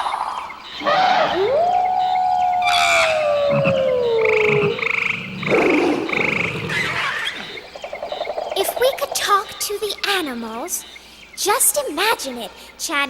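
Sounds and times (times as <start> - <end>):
animal calls: 0.0 - 9.7.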